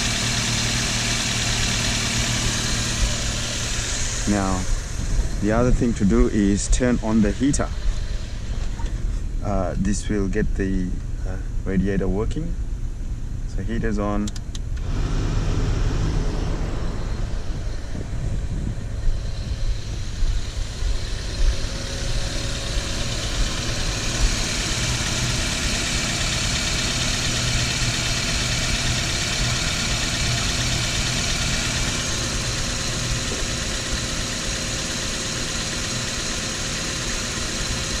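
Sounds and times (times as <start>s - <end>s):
heater blower hissing: 0.0s - 8.9s, 14.8s - 38.0s
car engine idling: 0.0s - 38.0s.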